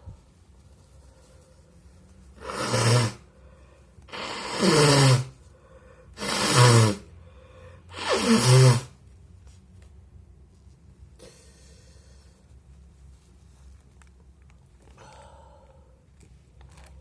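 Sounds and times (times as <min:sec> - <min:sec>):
person blasting air through nose: 0:02.4 - 0:03.3, 0:04.1 - 0:05.4, 0:06.2 - 0:07.2, 0:07.9 - 0:09.0.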